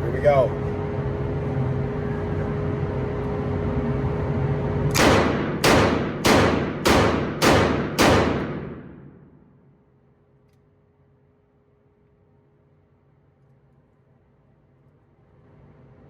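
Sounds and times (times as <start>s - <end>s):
steady hum: 0.0s - 16.0s
revolver shots echoing: 4.9s - 9.3s.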